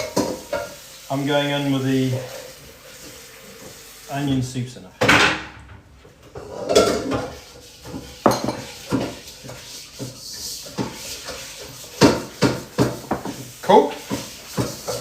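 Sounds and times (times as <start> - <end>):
utensils knocking on pots: 6.4 - 9.6.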